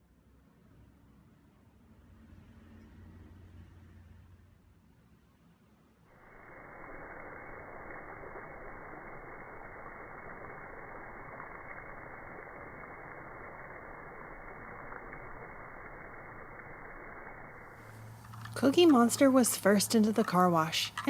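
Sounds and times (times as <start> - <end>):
water spraying: 6.2 - 21.0.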